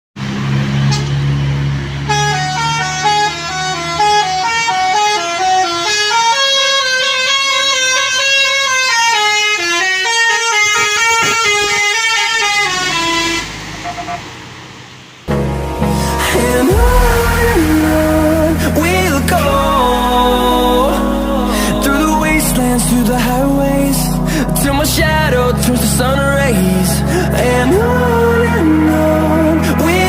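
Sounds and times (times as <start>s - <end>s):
musical bus horn tune: 0.8s - 1.3s, 2.0s - 14.3s, 15.3s - 30.0s
low steady drone: 15.3s - 30.0s.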